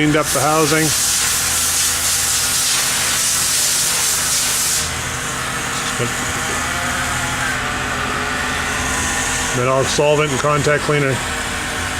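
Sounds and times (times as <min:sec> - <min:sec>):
low machine hum: 0:04.8 - 0:11.9.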